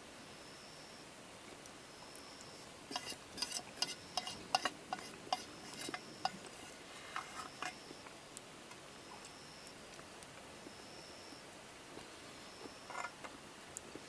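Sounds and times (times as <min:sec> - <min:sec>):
metal utensil clinking on cookware: 0:02.9 - 0:07.8.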